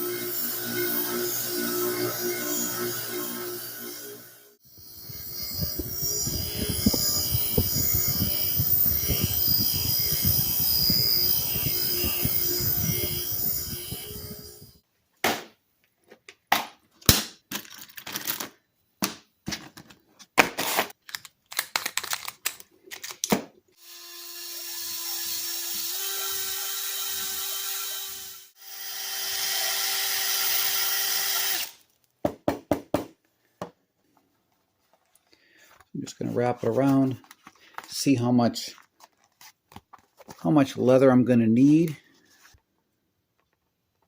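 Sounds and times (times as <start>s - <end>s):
power drill running: 0.0s - 14.8s, 23.8s - 31.8s.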